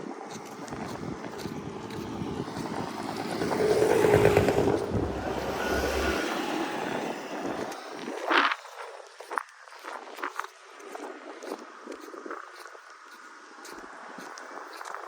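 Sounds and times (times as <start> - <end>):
motor vehicle passing: 0.8 - 8.3.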